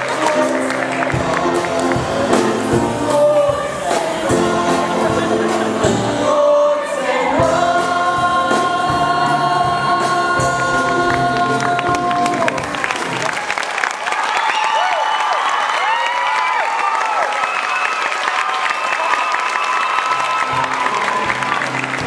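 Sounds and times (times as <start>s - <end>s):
group singing: 0.0s - 12.6s
band accompaniment: 0.0s - 13.8s, 20.0s - 22.0s.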